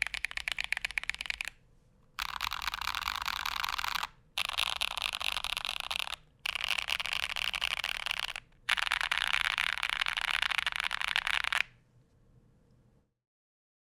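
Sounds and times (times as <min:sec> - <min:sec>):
mechanical keyboard typing: 0:00.0 - 0:01.6, 0:02.2 - 0:11.7.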